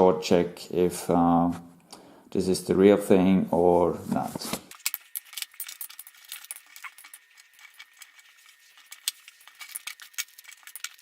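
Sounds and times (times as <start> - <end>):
plates and screws clinking: 4.7 - 11.0.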